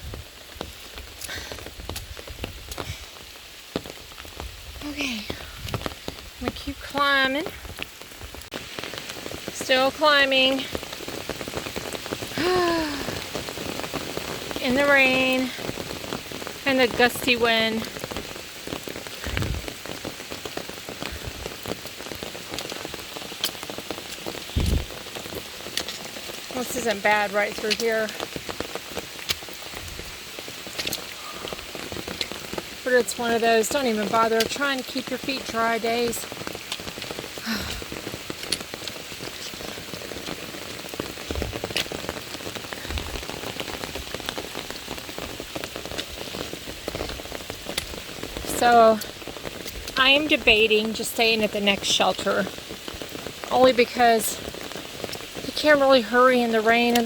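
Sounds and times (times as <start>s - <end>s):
raindrops ticking: 0.0s - 57.0s
steady rain: 0.0s - 57.0s
wind buffeting rumble: 4.0s - 8.5s, 14.4s - 20.1s, 24.3s - 28.5s, 29.6s - 30.3s, 32.7s - 51.1s
low thumps: 24.5s - 25.0s.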